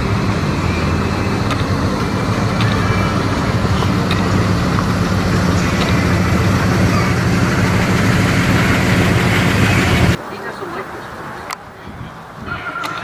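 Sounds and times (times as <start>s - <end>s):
car engine idling: 0.0s - 10.2s.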